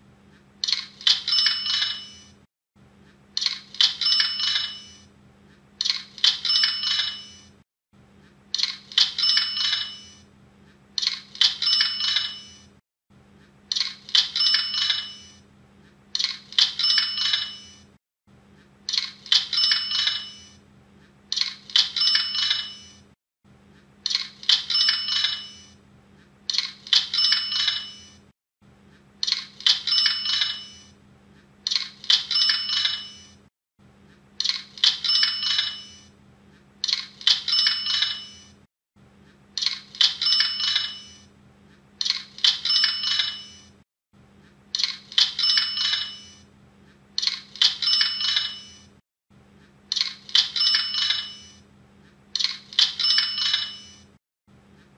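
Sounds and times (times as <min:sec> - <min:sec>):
cash register bell ring: 0:01.1 - 0:02.4, 0:03.9 - 0:05.1, 0:06.3 - 0:07.6, 0:09.1 - 0:10.2, 0:11.5 - 0:12.7, 0:14.2 - 0:15.4, 0:16.6 - 0:17.9, 0:19.4 - 0:20.6, 0:21.8 - 0:23.1, 0:24.6 - 0:25.8, 0:27.0 - 0:28.2, 0:29.7 - 0:31.0, 0:32.2 - 0:33.4, 0:34.8 - 0:36.1, 0:37.3 - 0:38.6, 0:40.1 - 0:41.3, 0:42.5 - 0:43.8, 0:45.2 - 0:46.5, 0:47.7 - 0:48.9, 0:50.4 - 0:51.6, 0:52.8 - 0:54.2.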